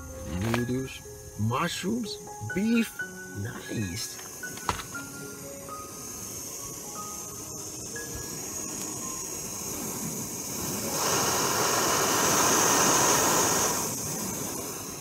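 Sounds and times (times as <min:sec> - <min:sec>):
steam hissing from vent: 0:00.0 - 0:15.0.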